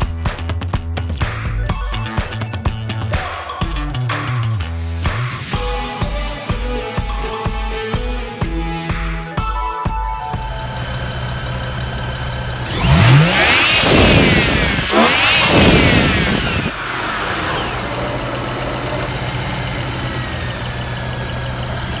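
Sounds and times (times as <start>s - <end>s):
car engine idling and revving: 10.4s - 22.0s.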